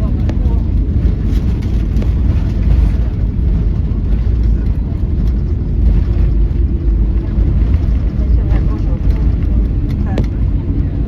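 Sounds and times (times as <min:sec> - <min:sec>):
aircraft cabin engine rumble: 0:00.0 - 0:11.0.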